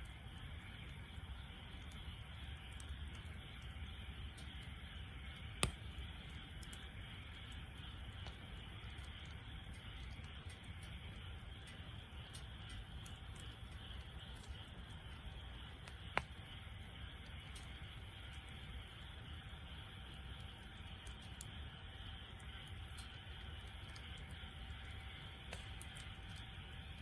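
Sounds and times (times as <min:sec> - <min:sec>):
wood fire hissing and crackling: 0:00.0 - 0:27.0
sharp fire pops: 0:05.4 - 0:07.0, 0:11.7 - 0:18.7.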